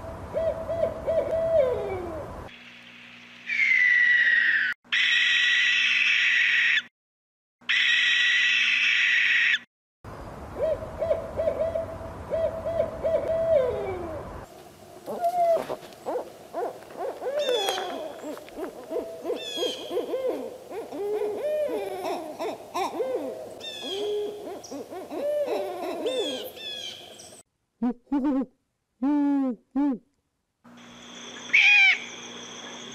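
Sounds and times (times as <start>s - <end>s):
owls hooting: 0.4s - 2.3s, 10.6s - 14.2s, 15.1s - 27.1s, 31.5s - 32.2s.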